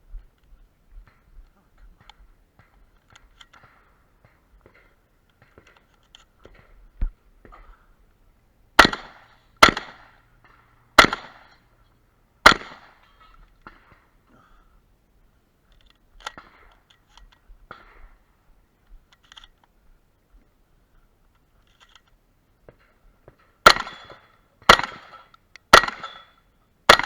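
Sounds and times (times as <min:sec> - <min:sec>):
gun handling clicks and rattles: 0:02.0 - 0:07.6, 0:15.7 - 0:18.1, 0:18.8 - 0:19.8, 0:20.9 - 0:27.0
shotgun shots: 0:08.8 - 0:11.6, 0:12.4 - 0:14.0, 0:23.6 - 0:27.0.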